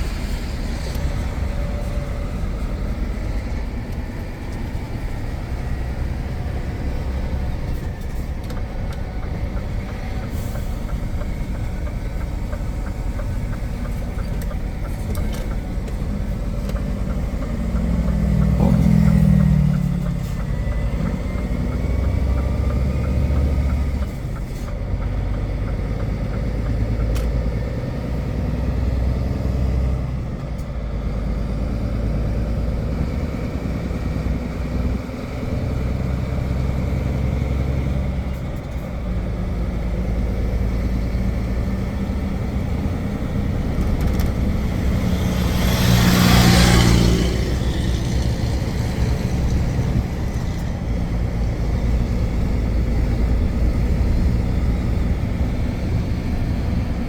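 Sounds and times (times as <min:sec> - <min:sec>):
truck diesel engine running: 0:00.0 - 0:57.0.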